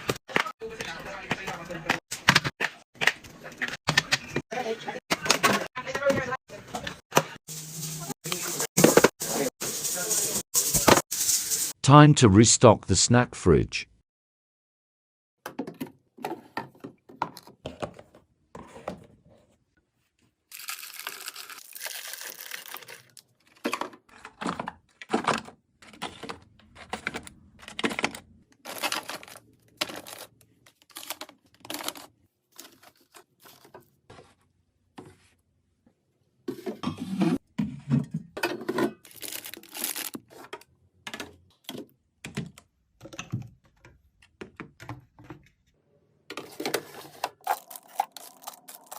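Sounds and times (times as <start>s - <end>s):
items tapping and knocking: 15.4s - 19.2s, 40.3s - 45.7s
plastic packaging rustling: 20.5s - 23.2s, 28.6s - 33.7s, 39.0s - 40.4s, 46.6s - 48.9s.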